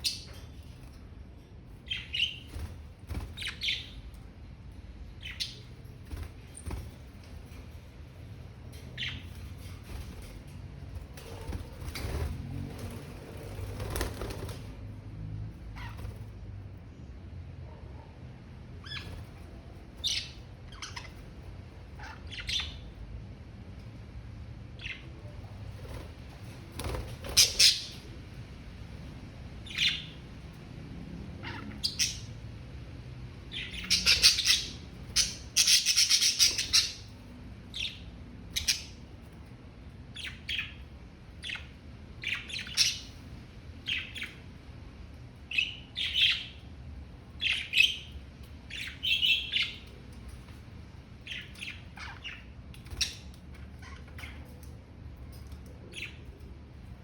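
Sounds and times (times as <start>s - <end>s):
budgerigars chirping and squawking: 0.0s - 1.0s, 1.8s - 4.2s, 5.2s - 7.7s, 9.0s - 10.5s, 15.7s - 16.3s, 18.8s - 19.4s, 20.0s - 23.0s, 24.8s - 25.1s, 26.8s - 28.0s, 29.6s - 30.2s, 31.4s - 32.4s, 33.4s - 39.1s, 40.1s - 43.2s, 43.8s - 44.4s, 45.5s - 46.7s, 47.4s - 49.9s, 51.2s - 54.7s, 55.9s - 56.4s.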